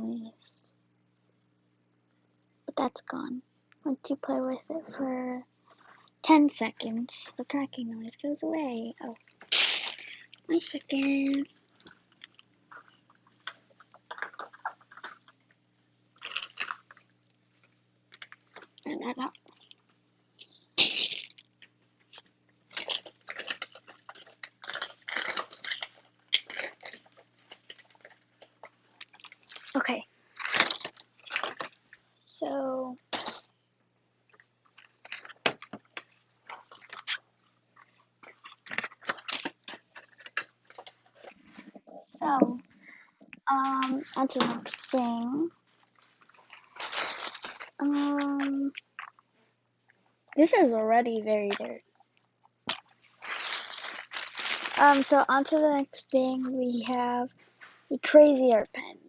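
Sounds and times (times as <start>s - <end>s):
squeezed toy crackling and squelching: 9.0s - 15.3s, 16.2s - 17.0s, 20.5s - 21.5s, 22.7s - 31.8s, 33.1s - 33.5s, 44.2s - 49.2s, 52.7s - 56.6s.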